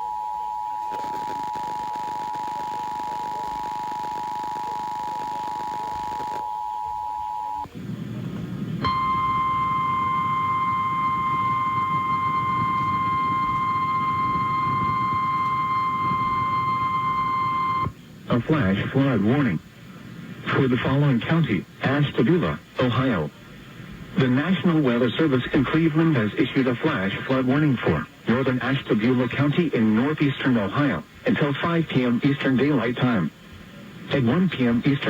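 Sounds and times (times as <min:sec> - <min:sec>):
radio receiver hiss: 0:00.7 - 0:35.0
two-tone alert signal: 0:08.8 - 0:17.9.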